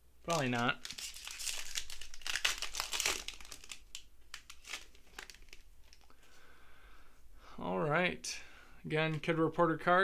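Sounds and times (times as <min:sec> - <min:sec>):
cards rustling and clicking: 0:00.3 - 0:06.1
foil wrapper crinkling: 0:00.3 - 0:06.1.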